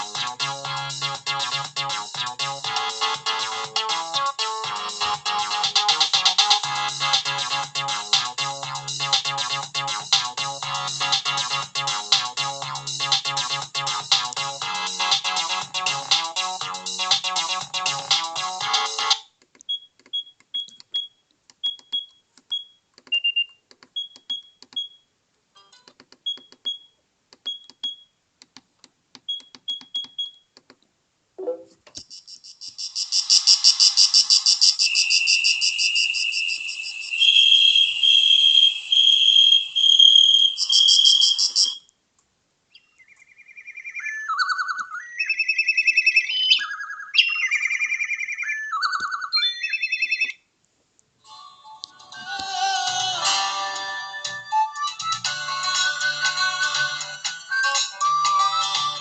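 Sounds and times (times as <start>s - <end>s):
high chirping beeps and clicks: 19.1s - 25.0s, 25.8s - 28.1s, 29.2s - 30.5s, 31.4s - 42.0s, 42.7s - 50.4s
dense electronic tone with whistle: 32.2s - 41.9s
electronic ringtone tune: 53.2s - 59.0s.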